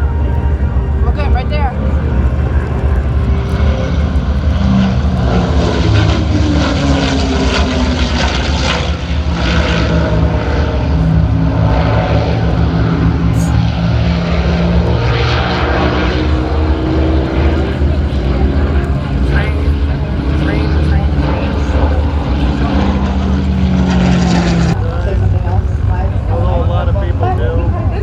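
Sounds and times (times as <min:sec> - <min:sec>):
propeller plane engines droning: 0:00.0 - 0:28.0.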